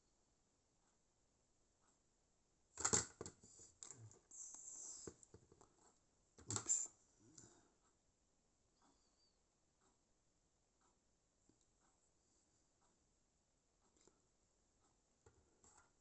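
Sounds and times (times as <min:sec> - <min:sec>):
scratchy hiss: 0:03.4 - 0:05.4, 0:06.4 - 0:07.6.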